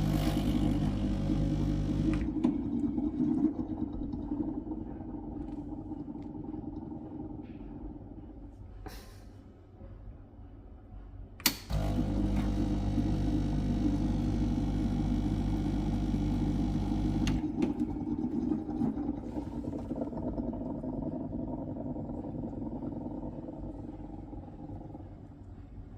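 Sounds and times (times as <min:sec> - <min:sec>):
espresso machine mechanical hum: 0:00.0 - 0:03.1, 0:11.7 - 0:25.0
espresso machine gurgling: 0:00.0 - 0:07.9, 0:11.7 - 0:25.2.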